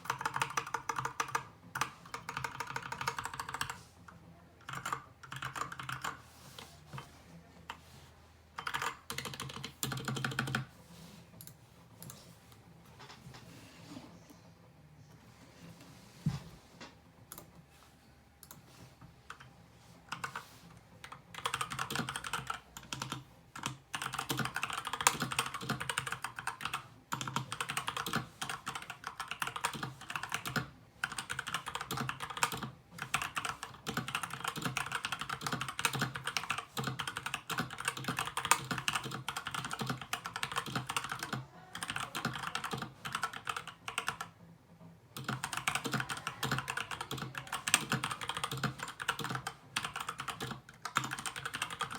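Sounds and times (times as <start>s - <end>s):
mechanical keyboard typing: 0.0s - 3.8s, 4.6s - 6.2s, 8.6s - 10.7s, 20.1s - 20.4s, 21.0s - 44.4s, 45.2s - 51.9s.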